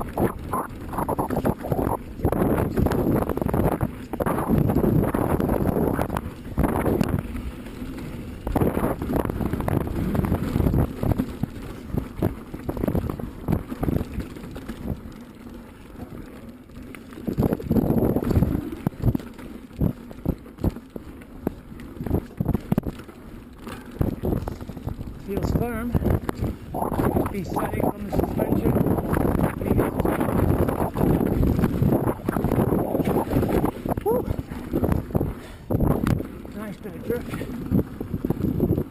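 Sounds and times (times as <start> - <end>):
bike tyres rumbling on dirt: 0.0 - 38.9
bike rattling clicks and knocks: 2.1 - 26.7.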